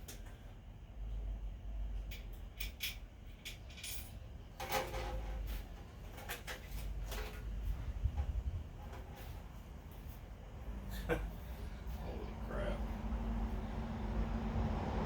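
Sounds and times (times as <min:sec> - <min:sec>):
metal parts clinking: 0:02.1 - 0:05.5
low handling rumble: 0:06.9 - 0:08.8.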